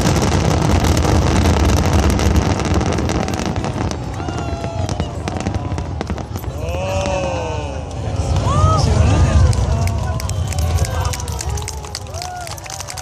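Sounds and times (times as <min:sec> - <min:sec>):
voices: 0:03.1 - 0:13.0.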